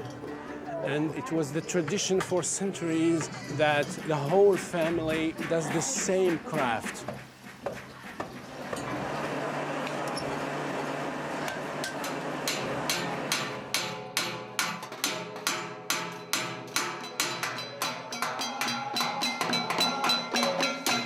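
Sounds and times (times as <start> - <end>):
market background noise: 0.0 - 13.7
hammers striking metal: 1.7 - 9.1, 11.4 - 21.0.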